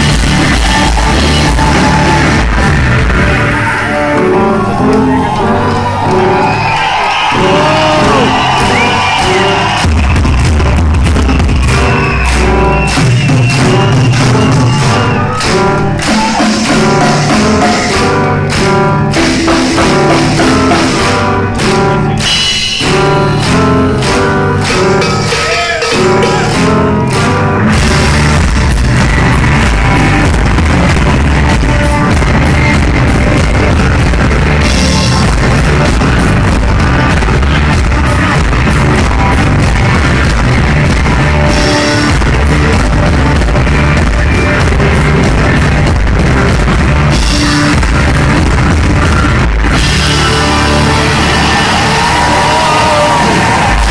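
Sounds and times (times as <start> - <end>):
live rock band playing: 0.0 - 53.9.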